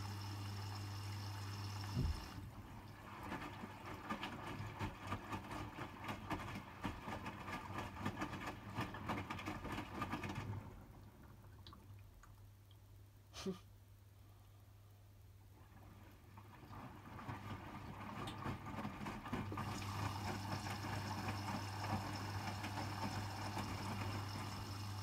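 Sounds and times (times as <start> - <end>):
washing machine filling with water: 0.0 - 11.8, 15.5 - 25.0
knock: 2.0 - 2.2.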